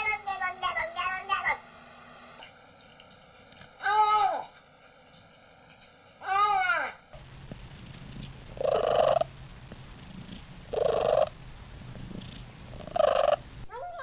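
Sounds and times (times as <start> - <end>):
cat purring: 8.0 - 13.7.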